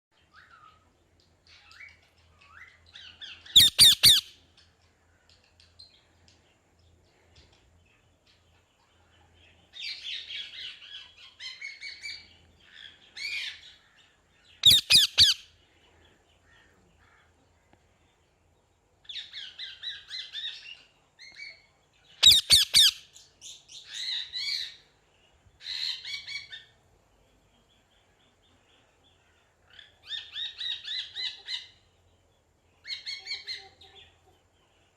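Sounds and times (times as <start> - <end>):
parrot chattering: 3.6 - 4.3, 14.6 - 15.4, 22.2 - 23.0
parrot squawking: 3.6 - 4.3, 14.6 - 15.4, 22.2 - 23.0.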